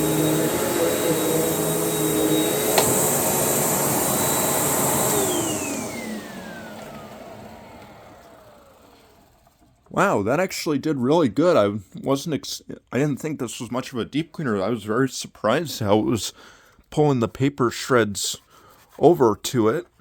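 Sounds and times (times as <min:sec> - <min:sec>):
vacuum cleaner whining: 0:00.0 - 0:09.8.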